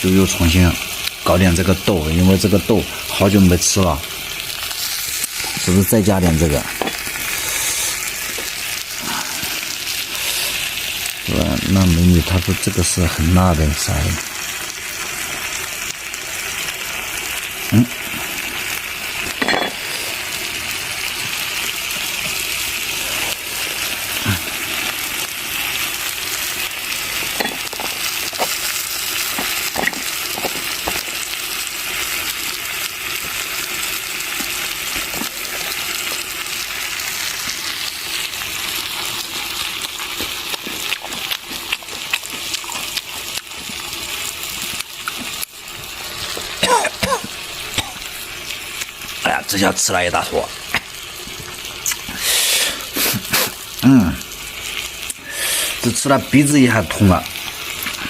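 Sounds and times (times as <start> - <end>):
peas sizzling in a pot: 0.0 - 58.0
utensil clinking against pot: 27.4 - 28.5, 29.3 - 31.0.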